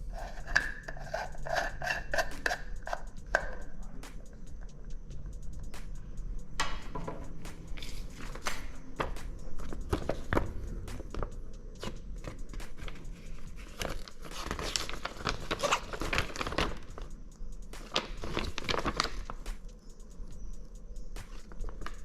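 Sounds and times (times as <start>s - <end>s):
packaging crinkling and tearing: 13.6s - 17.1s, 17.8s - 19.4s.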